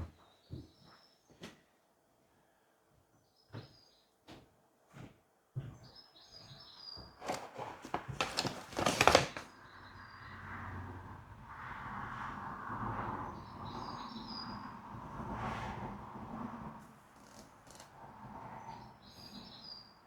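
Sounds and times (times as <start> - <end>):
loud scuffling and knocking: 7.1 - 9.5.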